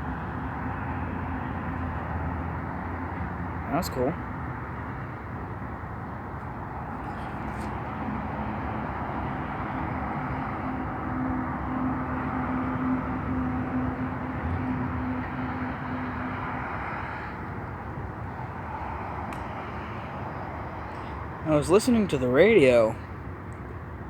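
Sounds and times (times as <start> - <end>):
diesel locomotive hum: 0.0 - 24.0.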